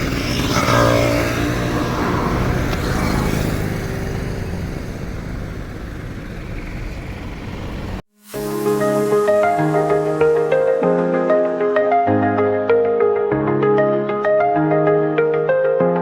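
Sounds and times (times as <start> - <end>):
road traffic passing: 0.0 - 10.8
music: 8.2 - 16.0.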